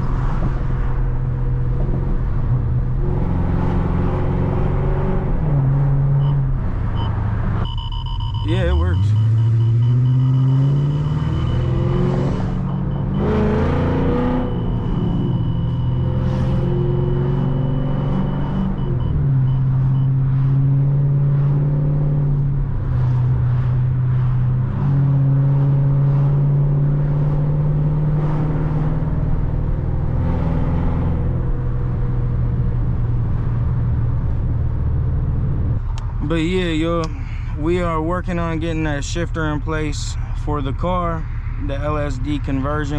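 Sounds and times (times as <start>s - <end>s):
car engine running: 5.2s - 20.5s.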